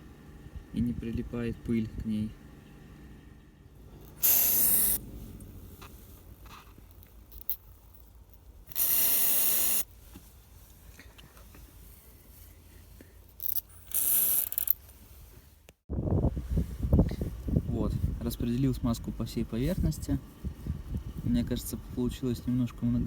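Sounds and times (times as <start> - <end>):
aerosol spray hissing: 4.1 - 5.0, 8.7 - 9.9.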